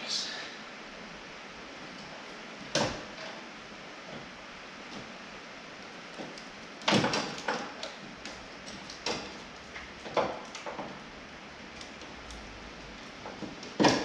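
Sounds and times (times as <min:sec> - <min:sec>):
tools knocking and clattering: 0:06.1 - 0:11.0, 0:13.2 - 0:14.0.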